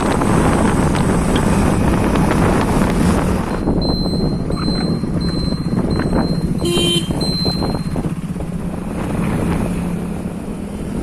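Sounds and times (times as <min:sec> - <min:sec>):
vehicle engine running: 0:00.0 - 0:11.0
wind buffeting microphone: 0:00.0 - 0:11.0
short beep: 0:03.6 - 0:08.0.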